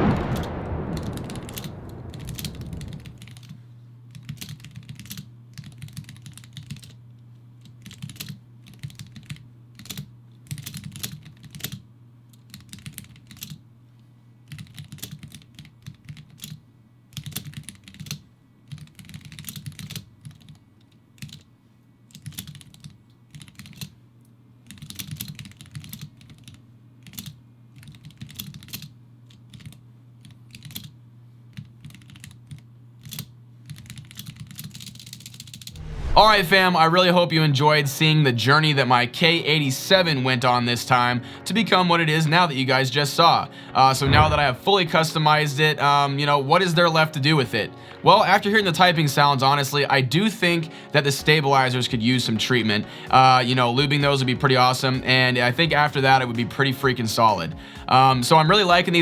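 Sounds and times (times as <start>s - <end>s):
low rumble: 0.0s - 3.4s, 35.8s - 36.7s, 43.9s - 44.6s
mechanical keyboard typing: 4.1s - 7.0s, 7.6s - 11.8s, 12.4s - 13.6s, 14.5s - 16.6s, 17.2s - 20.6s, 21.2s - 21.5s, 22.1s - 23.9s, 24.7s - 35.7s.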